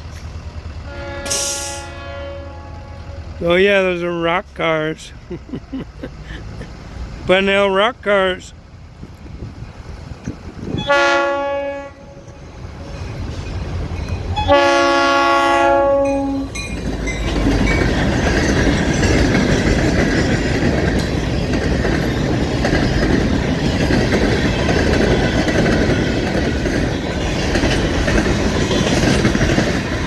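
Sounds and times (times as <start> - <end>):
freight train rumble: 0.0 - 30.0
locomotive horn: 0.8 - 3.4, 10.7 - 13.0, 14.3 - 16.6
train wheels clickety-clack: 8.9 - 11.1, 12.2 - 30.0.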